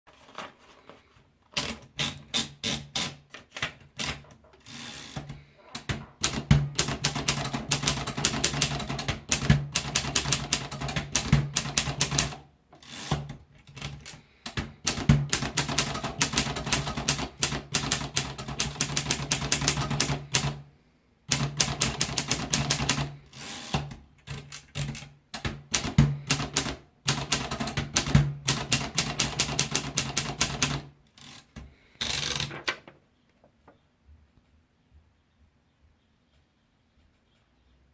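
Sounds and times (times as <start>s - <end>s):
typewriter key strikes: 5.2s - 12.4s.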